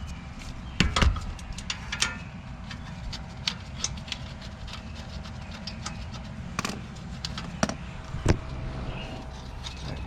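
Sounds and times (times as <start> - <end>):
sharp knock: 6.6 - 7.0.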